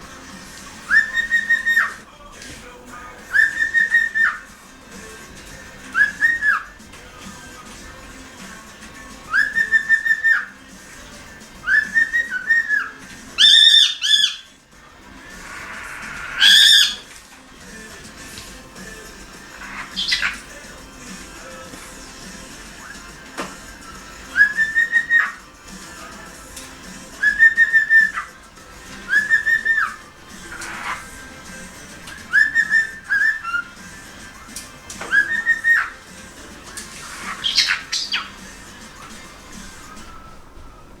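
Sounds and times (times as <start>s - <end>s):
cockatiel whistling: 0.0s - 2.2s, 3.0s - 41.0s.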